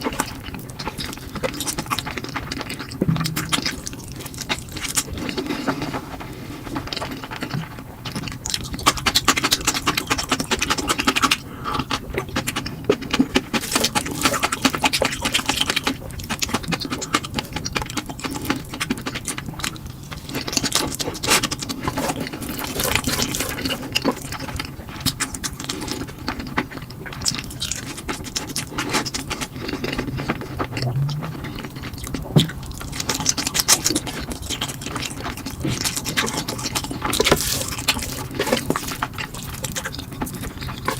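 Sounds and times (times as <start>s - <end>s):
person eating noodles: 28.7s - 32.0s.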